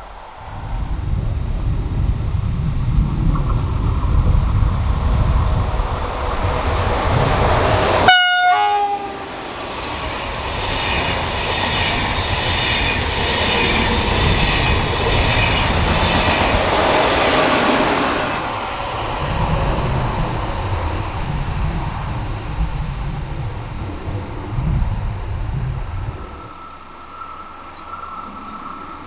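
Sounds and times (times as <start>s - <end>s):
train wheels rushing on rails: 0.0s - 29.0s
train horn blast: 7.2s - 9.6s.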